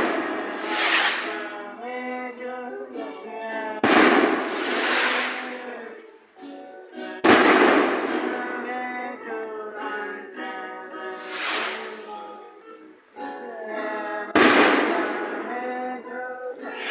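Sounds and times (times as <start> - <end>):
sudden loud noise burst: 0.0 - 1.6, 3.8 - 5.8, 11.2 - 12.3
music with held notes: 0.0 - 16.9.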